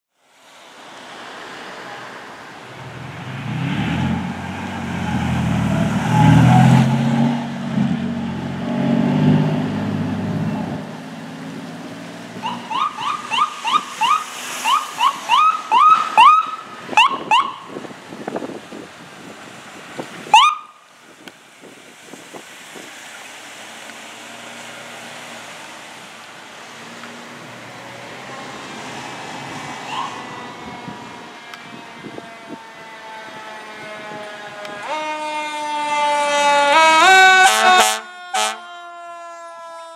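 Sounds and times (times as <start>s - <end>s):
fire engine driving by: 0.2s - 39.9s
vehicle engine accelerating: 2.7s - 14.6s
short rising siren tone: 3.1s - 8.3s, 29.8s - 38.7s.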